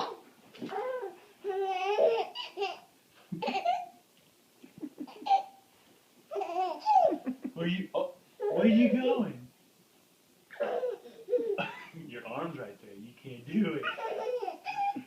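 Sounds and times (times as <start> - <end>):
young child laughing: 2.4 - 3.9, 4.6 - 5.6, 6.3 - 7.7, 13.8 - 15.0.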